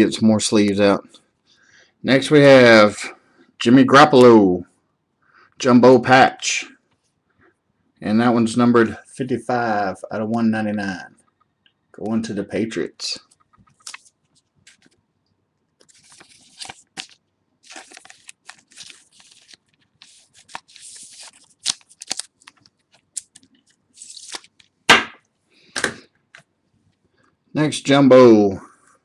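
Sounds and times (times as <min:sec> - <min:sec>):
cards rustling and sliding: 0:13.3 - 0:15.0, 0:15.8 - 0:24.8.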